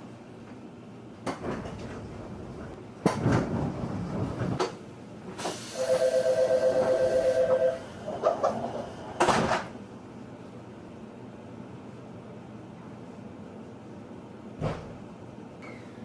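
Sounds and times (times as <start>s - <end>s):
compressed air hiss: 5.4s - 5.9s.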